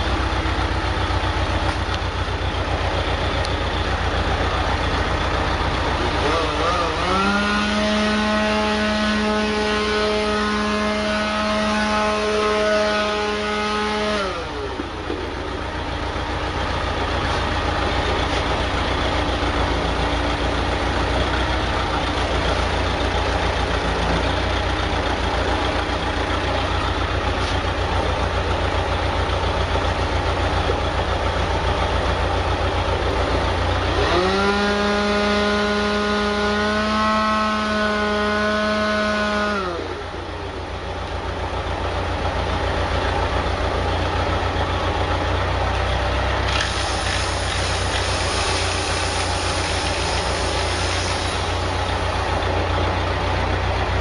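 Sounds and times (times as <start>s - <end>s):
generator engine running: 0.0s - 54.0s
machine whine: 46.4s - 53.0s.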